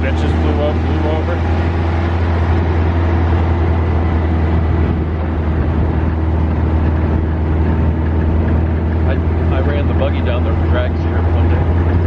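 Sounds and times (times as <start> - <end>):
dune buggy engine cruising: 0.0 - 12.0
road noise: 0.0 - 12.0
wind noise: 2.2 - 9.1.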